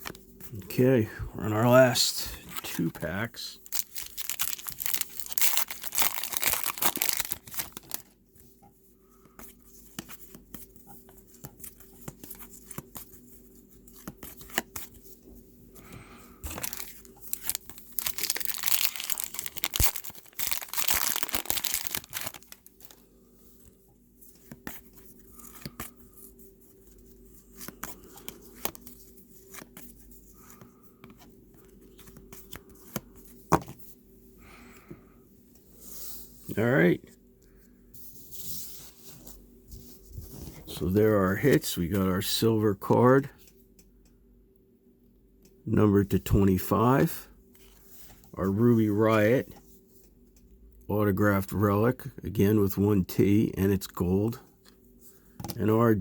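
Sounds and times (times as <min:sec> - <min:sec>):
wrappers tearing and crinkling: 0:03.6 - 0:08.1, 0:16.4 - 0:23.0
cards clicking and rustling: 0:03.7 - 0:08.1, 0:09.2 - 0:15.0, 0:16.4 - 0:23.0.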